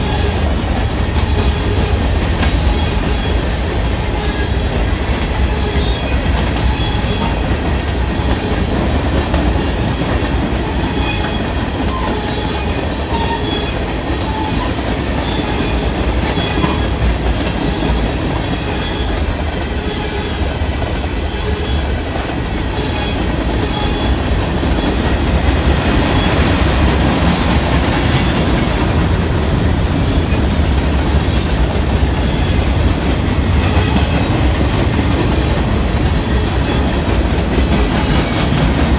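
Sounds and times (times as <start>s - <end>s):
train cars rumbling past: 0.0s - 38.9s
high wheel squeal: 10.8s - 17.0s, 29.5s - 32.6s.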